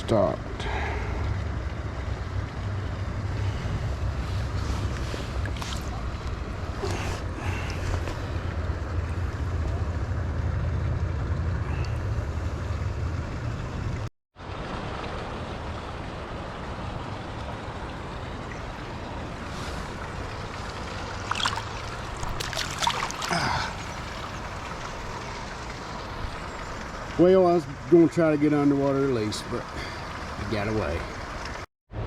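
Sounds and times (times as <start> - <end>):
river water rushing: 3.2 - 8.6, 14.5 - 27.2.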